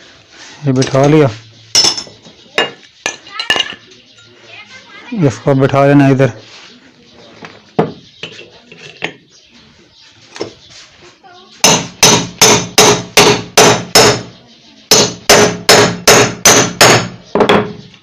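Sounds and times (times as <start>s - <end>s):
hammer striking metal: 11.6s - 14.3s, 14.9s - 17.8s.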